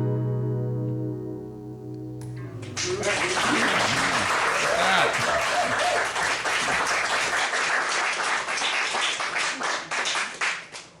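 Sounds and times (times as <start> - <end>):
audience applauding: 2.4 - 10.9.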